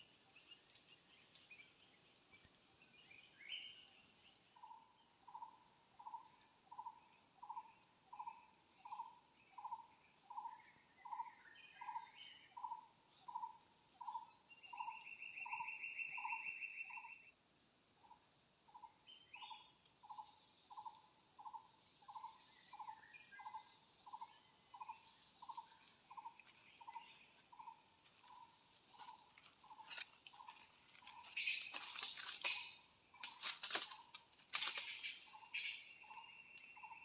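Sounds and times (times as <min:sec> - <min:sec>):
insects chirring: 0:00.0 - 0:37.0
soft rustles and clicks: 0:29.0 - 0:35.4.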